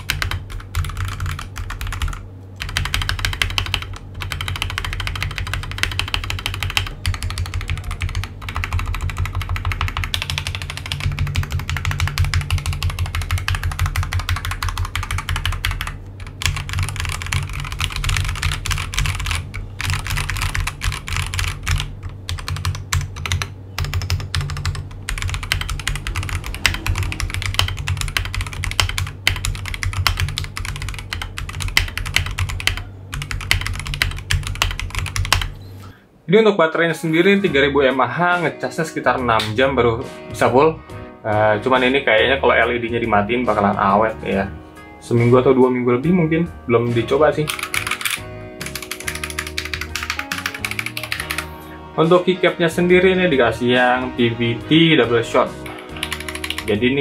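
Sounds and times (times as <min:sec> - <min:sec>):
mechanical keyboard typing: 0:00.0 - 0:35.5, 0:47.4 - 0:51.5, 0:55.6 - 0:57.0.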